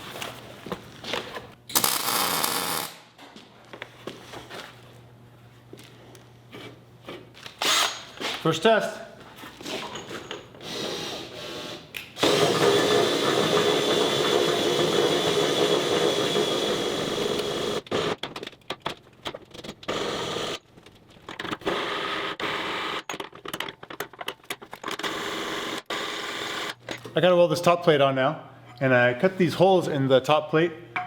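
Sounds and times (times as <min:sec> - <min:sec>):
power drill motor whine: 0:07.6 - 0:08.2, 0:10.6 - 0:18.1.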